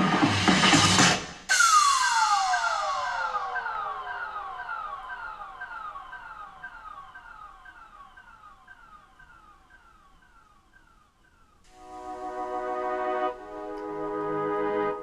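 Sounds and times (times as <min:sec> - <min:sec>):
falling synth with echo: 0:01.5 - 0:15.0
held keyboard chord: 0:11.7 - 0:15.0.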